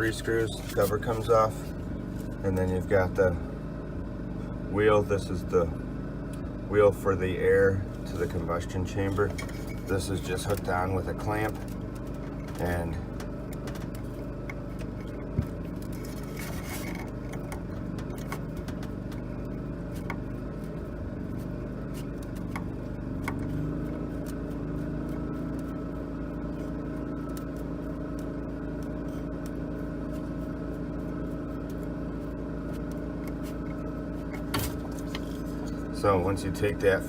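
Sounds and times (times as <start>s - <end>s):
steady machine hum: 0.0s - 37.0s
hand tools clicking and scraping: 9.0s - 19.3s.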